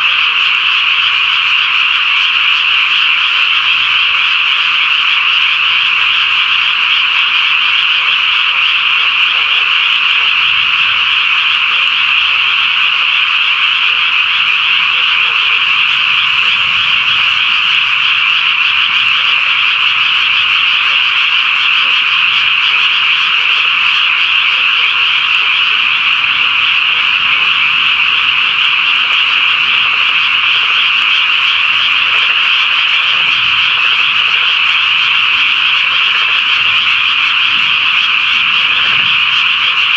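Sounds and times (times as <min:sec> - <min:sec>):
chorus of frogs calling: 0:00.0 - 0:39.9.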